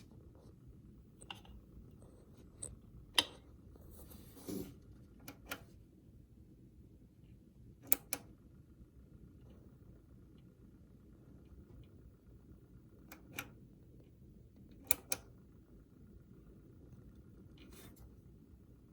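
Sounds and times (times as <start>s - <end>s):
power supply fan whirring: 0.0s - 18.9s.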